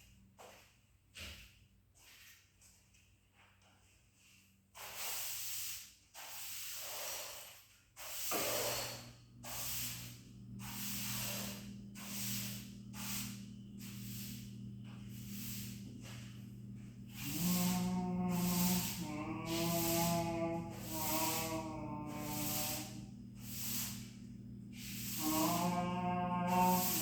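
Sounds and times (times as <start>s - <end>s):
steady low hum: 8.3s - 27.0s
heavy breathing: 8.8s - 27.0s.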